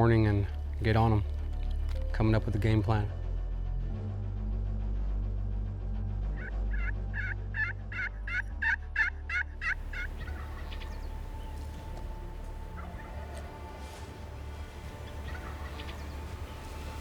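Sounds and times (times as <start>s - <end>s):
wild turkey yelping: 6.4s - 17.0s.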